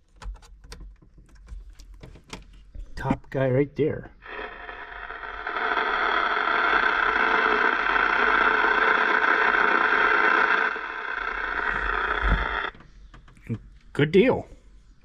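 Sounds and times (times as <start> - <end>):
radio static hiss: 4.1 - 12.7.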